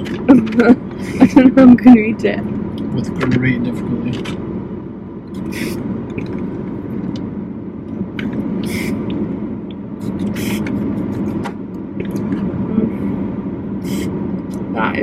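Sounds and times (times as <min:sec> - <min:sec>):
air conditioning hum: 0:00.0 - 0:15.0
car engine idling: 0:00.0 - 0:15.0.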